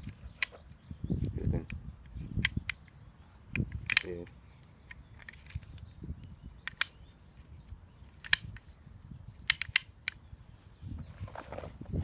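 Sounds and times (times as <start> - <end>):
revolver action clicking: 6.6 - 7.0.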